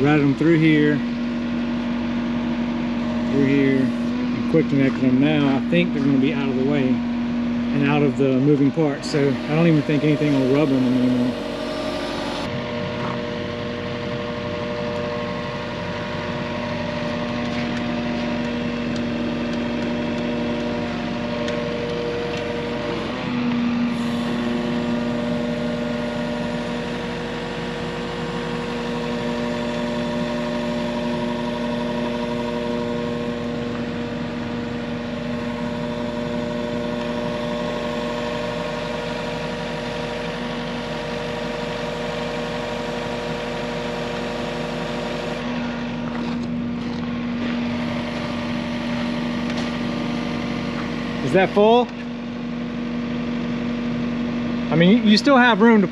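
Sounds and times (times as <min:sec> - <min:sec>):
excavator diesel engine running: 0:00.0 - 0:55.9.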